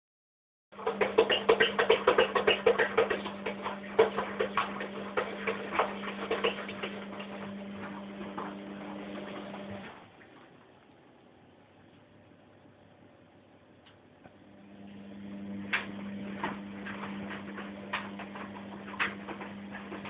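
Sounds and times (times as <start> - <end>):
washing machine humming: 0.7 - 10.9, 14.1 - 20.0
rapid clicking and tapping: 0.8 - 9.7, 15.7 - 20.0.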